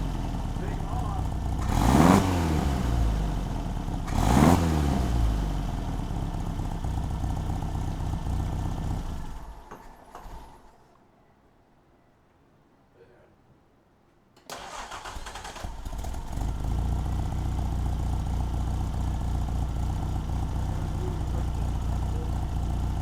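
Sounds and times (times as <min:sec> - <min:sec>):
car engine revving: 0:00.0 - 0:07.3.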